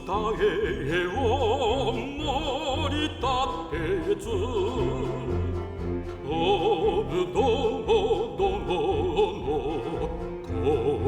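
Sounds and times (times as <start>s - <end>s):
instrumental accompaniment: 0.0s - 11.0s
person singing with vibrato: 0.0s - 11.0s.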